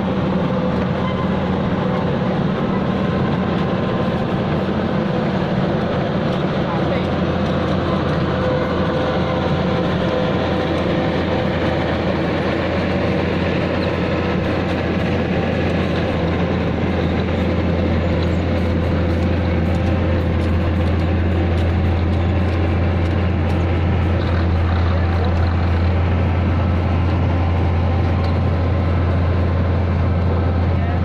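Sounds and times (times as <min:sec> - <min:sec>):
diesel engine running: 0:00.0 - 0:31.0.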